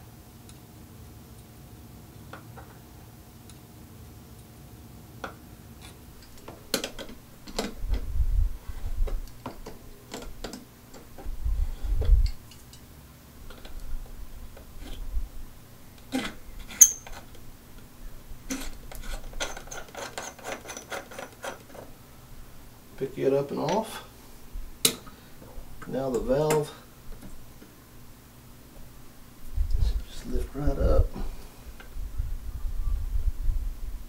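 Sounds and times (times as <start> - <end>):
pliers clicking and knocking on metal: 6.2 - 8.0
sharp metallic clink: 16.8 - 17.2.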